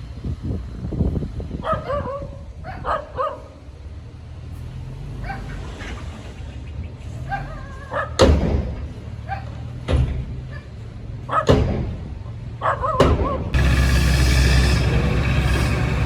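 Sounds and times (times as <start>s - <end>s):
dog barking: 1.6s - 3.5s
low engine rumble: 13.6s - 16.0s.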